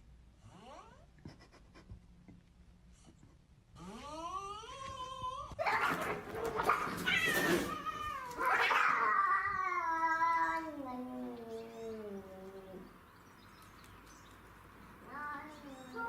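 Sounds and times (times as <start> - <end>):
cat yowling: 3.9 - 12.8.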